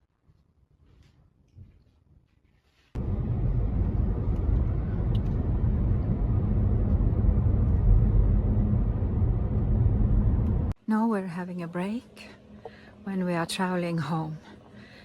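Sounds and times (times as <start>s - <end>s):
car engine and road rumble: 3.0s - 10.8s.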